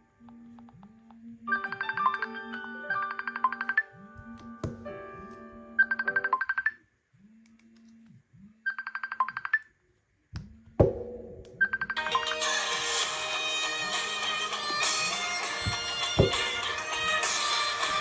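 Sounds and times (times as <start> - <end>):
musical ringtone: 1.5 - 3.9, 5.8 - 6.7
sharp knock: 10.4 - 12.1, 15.7 - 16.8.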